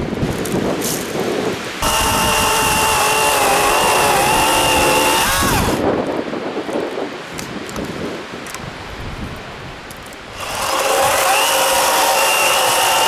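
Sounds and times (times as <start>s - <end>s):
electric chainsaw whining: 1.8s - 5.8s, 10.3s - 13.0s.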